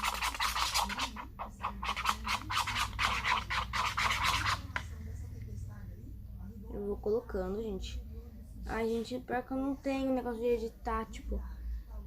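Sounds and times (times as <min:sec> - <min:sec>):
utensil scraping slime in bowl: 0:00.0 - 0:05.0.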